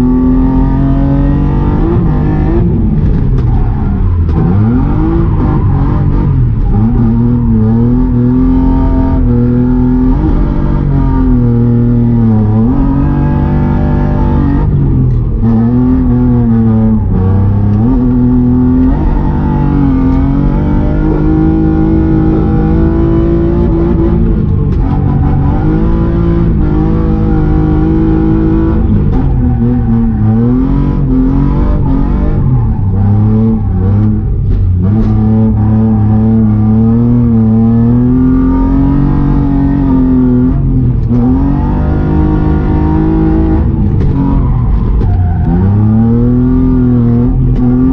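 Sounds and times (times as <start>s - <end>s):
car engine revving: 0.0s - 47.9s.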